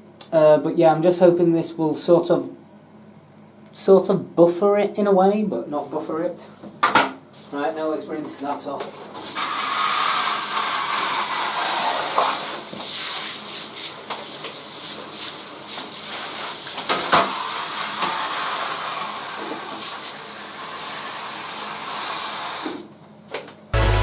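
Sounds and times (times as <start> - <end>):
shower spray on plastic: 9.2 - 22.9.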